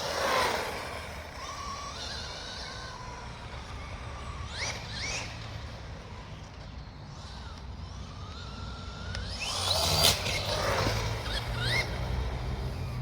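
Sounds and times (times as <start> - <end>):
rc car electric motor whine: 0.0 - 13.0.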